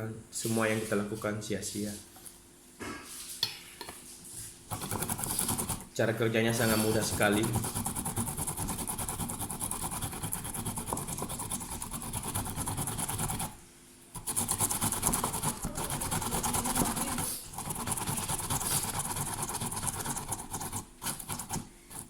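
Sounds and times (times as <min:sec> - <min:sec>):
ginger grating by hand: 0:04.7 - 0:05.9, 0:06.5 - 0:13.6, 0:14.2 - 0:22.0.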